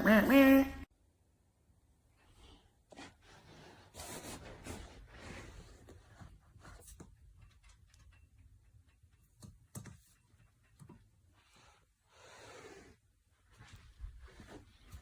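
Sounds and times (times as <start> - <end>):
faint rustling and rubbing: 2.2 - 8.1, 9.9 - 15.0.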